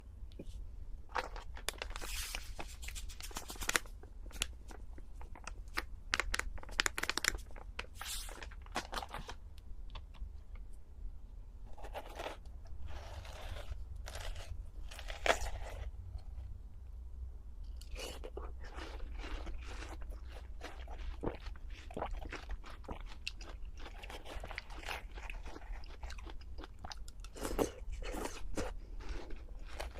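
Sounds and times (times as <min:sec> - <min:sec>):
wrapper crinkling and tearing: 0:01.1 - 0:04.5, 0:05.2 - 0:09.4
food crunching: 0:11.7 - 0:15.9, 0:17.7 - 0:29.9.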